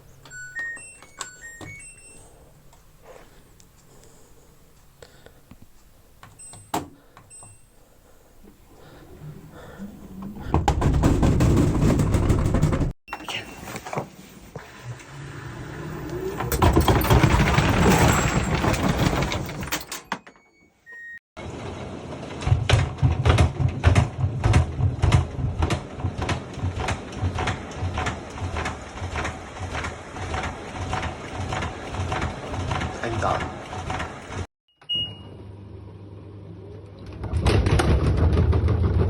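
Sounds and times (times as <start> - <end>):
washing machine spinning: 0.0 - 2.2, 6.2 - 7.7, 8.4 - 12.9, 15.0 - 20.4, 21.4 - 39.0
washing machine drum thumping: 10.2 - 12.9, 22.4 - 34.2.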